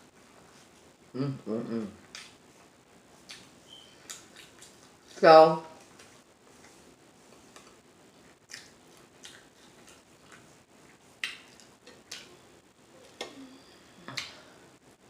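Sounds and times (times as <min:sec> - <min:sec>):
wet mouth smacks chewing: 0:02.0 - 0:02.4, 0:03.2 - 0:04.9, 0:08.5 - 0:12.3.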